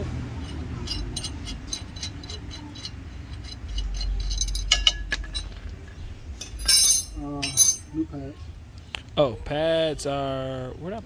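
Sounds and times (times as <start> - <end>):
metal clinks with short ring: 3.4 - 5.5, 6.4 - 7.9.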